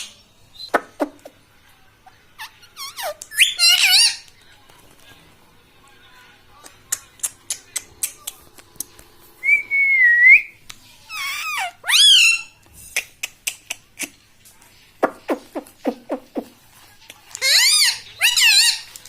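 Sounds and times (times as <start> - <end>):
parakeet squawk: 2.4 - 4.3, 11.1 - 12.6, 17.4 - 18.9
parakeet chips and whistles: 2.9 - 4.3, 17.4 - 19.0.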